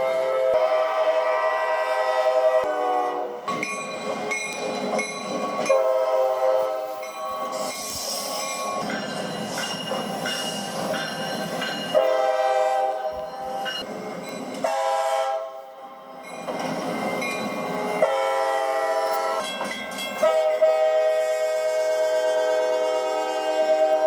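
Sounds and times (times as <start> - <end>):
train air horn blasts: 0.0 - 3.5, 5.7 - 8.6, 11.9 - 13.1, 14.6 - 15.7, 17.8 - 19.6, 20.2 - 24.0
train running rumble: 0.0 - 15.4, 16.1 - 24.0.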